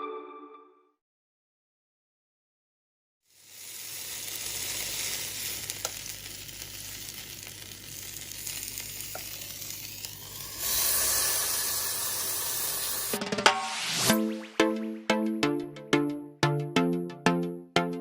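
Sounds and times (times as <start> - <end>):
meat sizzling in hot fat: 3.3 - 13.2.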